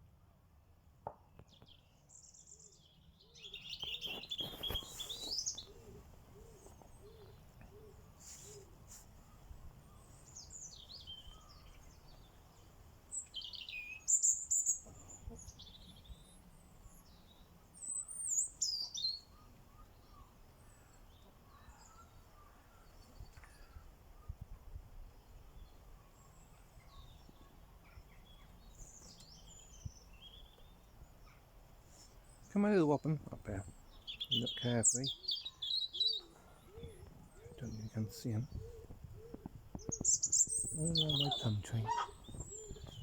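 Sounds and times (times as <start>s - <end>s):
robin singing: 1.4s - 24.4s, 25.2s - 43.0s
low soft bird call: 2.4s - 24.8s, 33.5s - 43.0s.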